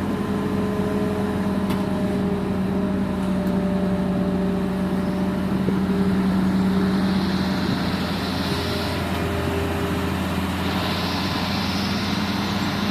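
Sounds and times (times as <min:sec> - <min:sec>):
excavator diesel engine running: 0:00.0 - 0:12.9
hiss: 0:10.6 - 0:12.9.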